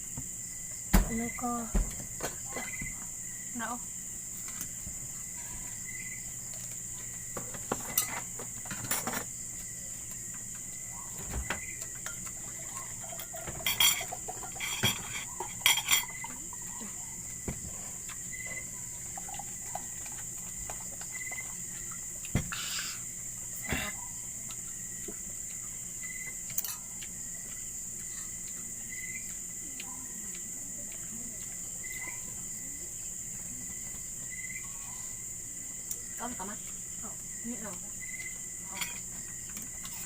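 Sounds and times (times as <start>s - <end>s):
crickets chirring: 0.0s - 40.0s
plate and utensils clinking: 7.5s - 9.3s, 12.0s - 16.3s, 26.6s - 26.9s, 38.7s - 39.1s.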